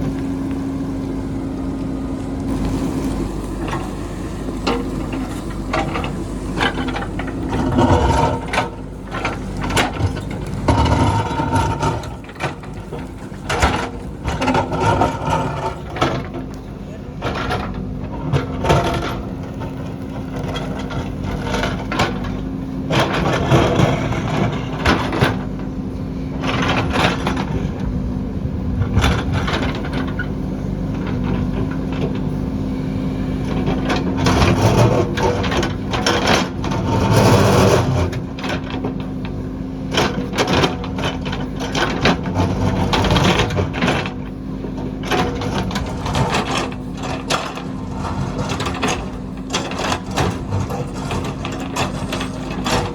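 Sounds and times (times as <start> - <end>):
diesel engine humming: 0.0 - 52.9
bucket clanking and scraping rock: 2.5 - 25.5, 33.4 - 39.3, 39.9 - 52.9.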